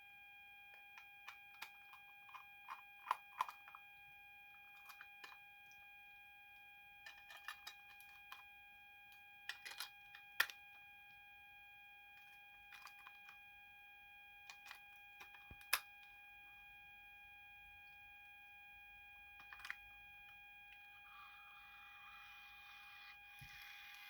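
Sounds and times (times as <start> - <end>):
faint electronic tone: 15.1 - 24.0.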